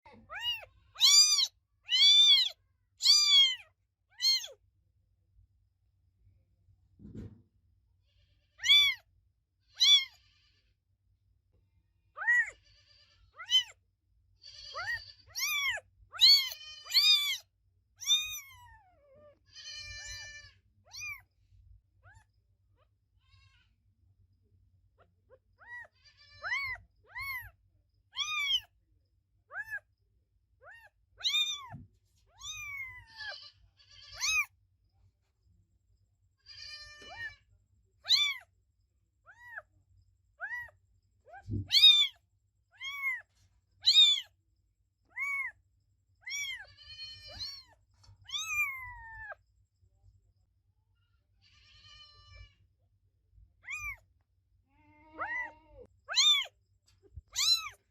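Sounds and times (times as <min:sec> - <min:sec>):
kitten meowing: 0:00.1 - 0:04.6, 0:08.6 - 0:09.1, 0:09.7 - 0:10.3, 0:12.2 - 0:12.6, 0:13.3 - 0:13.8, 0:14.5 - 0:21.3, 0:25.6 - 0:27.6, 0:28.2 - 0:28.8, 0:29.5 - 0:29.9, 0:30.6 - 0:34.5, 0:36.5 - 0:38.5, 0:39.3 - 0:39.7, 0:40.4 - 0:42.2, 0:42.8 - 0:44.3, 0:45.1 - 0:45.6, 0:46.2 - 0:49.4, 0:53.6 - 0:54.1, 0:54.7 - 0:57.9.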